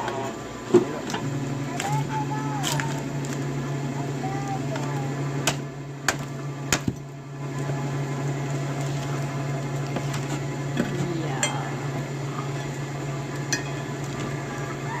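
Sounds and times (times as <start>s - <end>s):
low hum: 0.0s - 15.0s
wood knocks while splitting firewood: 5.4s - 7.0s.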